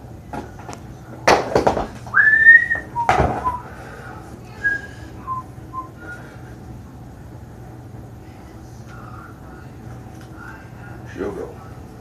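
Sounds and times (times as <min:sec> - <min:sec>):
man whistling: 0:02.1 - 0:03.7, 0:04.7 - 0:06.2.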